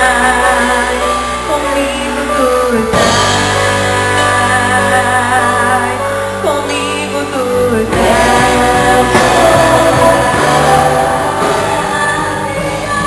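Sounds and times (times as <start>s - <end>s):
band playing with bass and drums: 0.0s - 13.0s
voices singing together: 7.8s - 13.0s.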